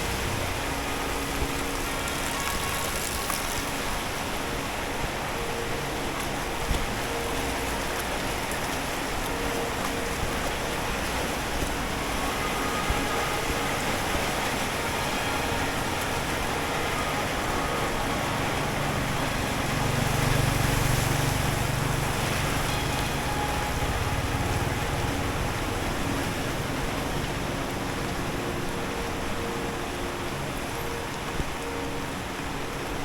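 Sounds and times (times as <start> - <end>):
traffic hissing on wet pavement: 0.0 - 33.0
passing vehicle engine: 15.4 - 28.4.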